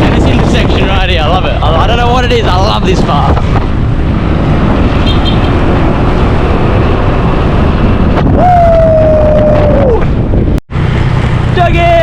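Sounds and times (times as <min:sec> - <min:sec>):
wind on microphone: 0:00.0 - 0:11.6
motorbike engine drone: 0:03.5 - 0:12.0.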